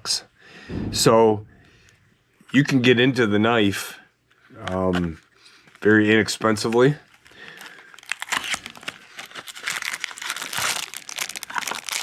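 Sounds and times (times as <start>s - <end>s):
packaging crinkling: 7.1s - 12.0s.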